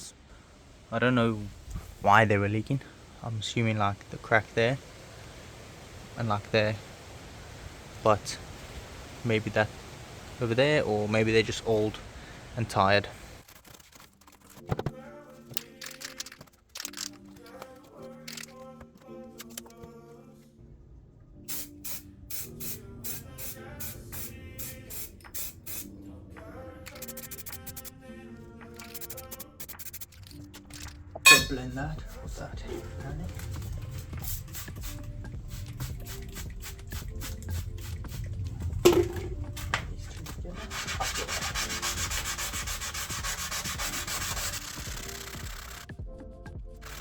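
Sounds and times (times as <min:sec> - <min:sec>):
electronic music with steady beat: 0:26.9 - 0:28.0, 0:44.9 - 0:47.0
abrasive rasping on car paint: 0:40.5 - 0:45.8.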